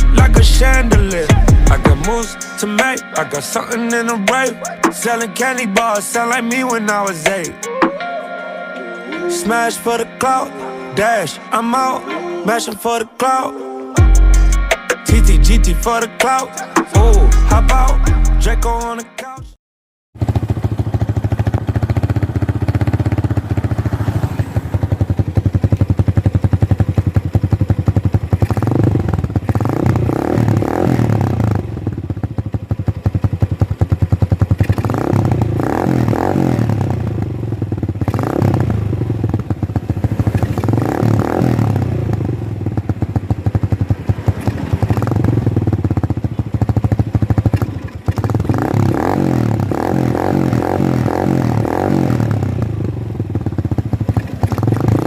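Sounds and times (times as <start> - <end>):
motorcycle engine revving: 0.0 - 2.4, 20.2 - 55.0.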